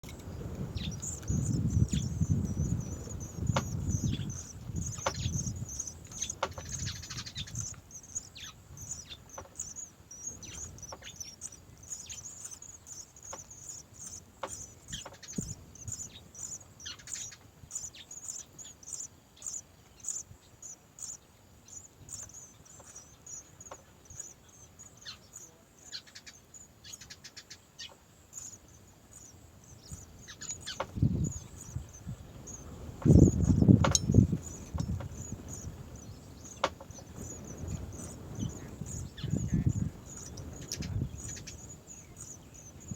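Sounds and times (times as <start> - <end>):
small birds chirping: 0.0 - 42.9
low thuds and rumbling: 33.0 - 35.6.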